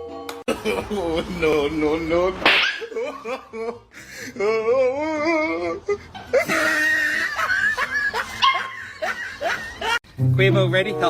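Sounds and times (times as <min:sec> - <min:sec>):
wavering crying voice: 0:02.8 - 0:07.5.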